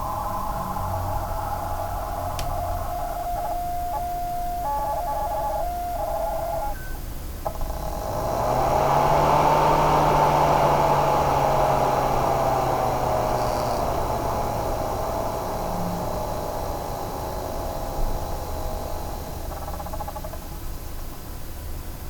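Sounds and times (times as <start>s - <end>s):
low hum: 0.0s - 6.8s
power supply tonal whine: 0.0s - 20.9s
rushing fan noise: 0.0s - 22.0s.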